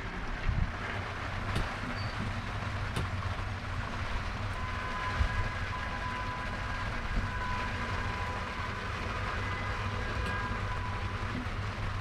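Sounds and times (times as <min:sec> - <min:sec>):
wind rumble on microphone: 0:00.0 - 0:08.3
heavy rain: 0:00.0 - 0:12.0.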